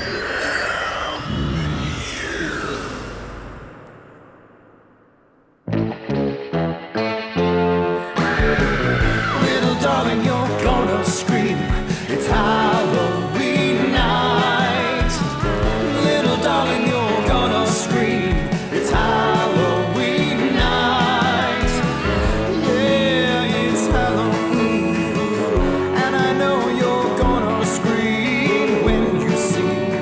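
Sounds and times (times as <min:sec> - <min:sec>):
band playing: 0:05.7 - 0:30.0
person singing: 0:08.0 - 0:30.0
drum hits: 0:08.2 - 0:30.0.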